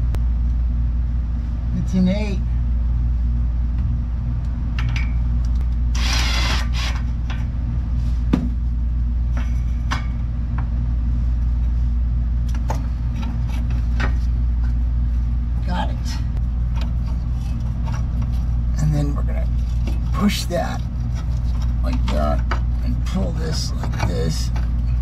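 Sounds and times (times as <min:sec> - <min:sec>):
steady low hum: 0:00.0 - 0:25.0.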